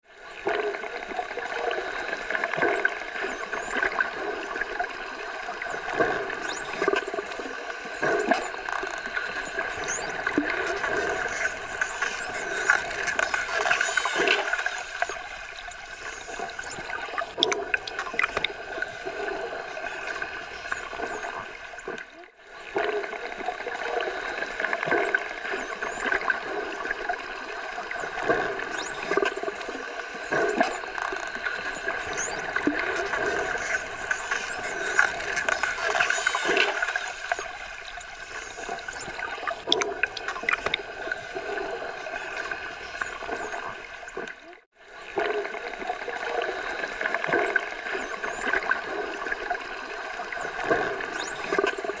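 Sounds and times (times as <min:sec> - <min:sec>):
dolphin whistles: 0:05.6 - 0:21.4.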